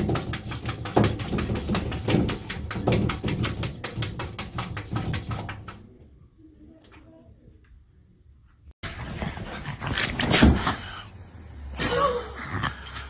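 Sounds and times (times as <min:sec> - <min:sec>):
fast sharp taps: 0:00.0 - 0:05.9.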